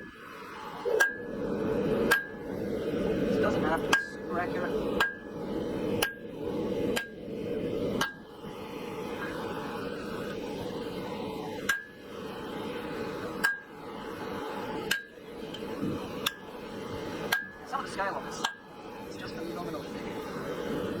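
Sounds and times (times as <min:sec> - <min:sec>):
low rushing background: 0:00.0 - 0:21.0.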